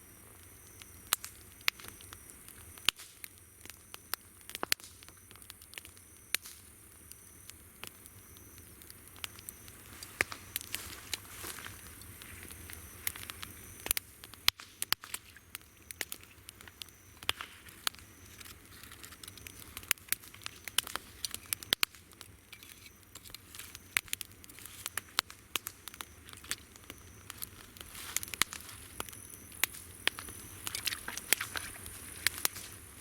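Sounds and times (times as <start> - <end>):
campfire crackling and popping: 0.0 - 33.0
insects chirping: 0.0 - 33.0
high insect trill: 15.0 - 33.0.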